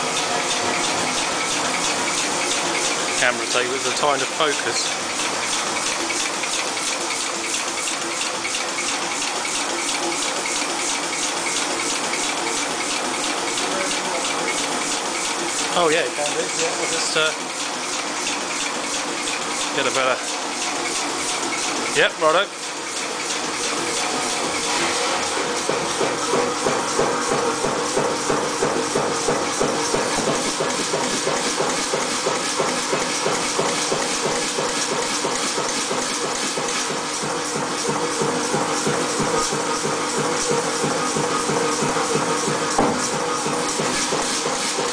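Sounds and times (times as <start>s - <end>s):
power hammer strokes: 0.0s - 8.2s, 11.6s - 35.4s.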